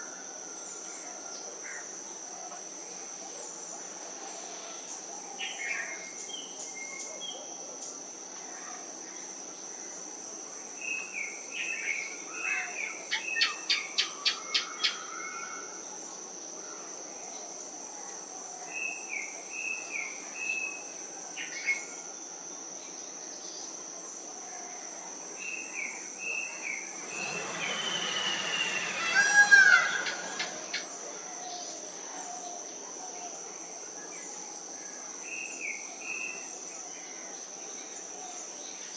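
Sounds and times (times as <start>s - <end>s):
crickets droning: 0.0s - 38.9s
bird calls: 25.8s - 31.7s.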